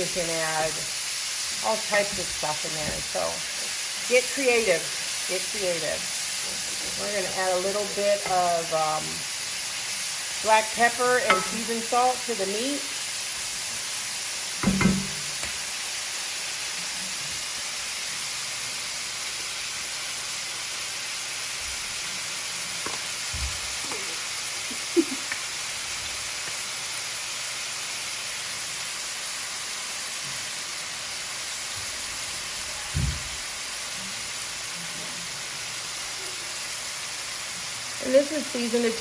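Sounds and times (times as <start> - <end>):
meat sizzling in a frying pan: 0.0 - 39.0
knocks on a pan: 11.3 - 11.7, 14.6 - 15.6.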